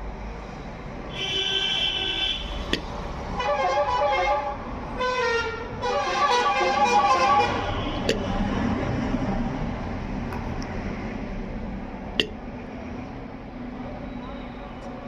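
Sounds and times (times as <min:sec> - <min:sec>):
vehicle horns honking: 0:01.1 - 0:02.8, 0:03.4 - 0:08.2.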